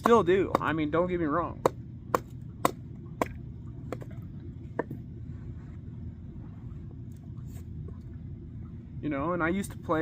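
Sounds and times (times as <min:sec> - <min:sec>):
blade chopping wood: 0:00.0 - 0:00.8, 0:01.6 - 0:04.1
low background rumble: 0:00.0 - 0:10.0.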